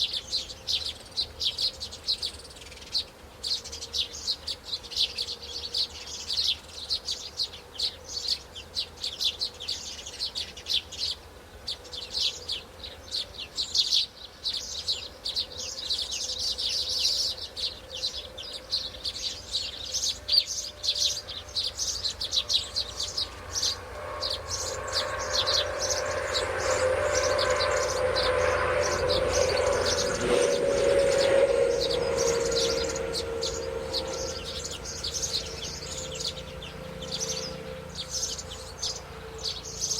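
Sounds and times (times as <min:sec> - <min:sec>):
small birds chirping: 0:00.0 - 0:39.9
droning hum: 0:15.3 - 0:39.9.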